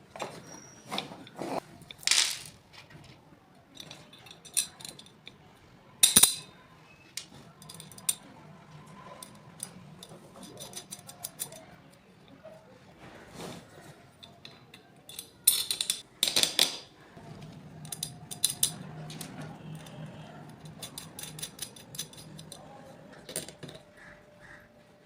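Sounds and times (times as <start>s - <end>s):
hard objects clicking and tapping: 1.8s - 2.6s, 14.2s - 24.0s.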